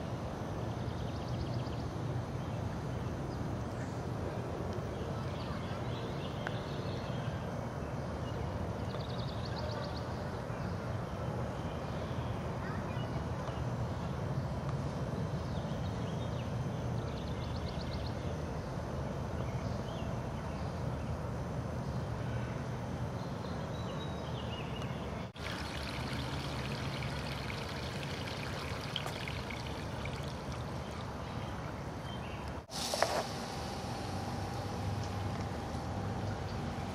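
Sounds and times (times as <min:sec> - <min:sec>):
water pouring onto ground: 0:25.4 - 0:31.4.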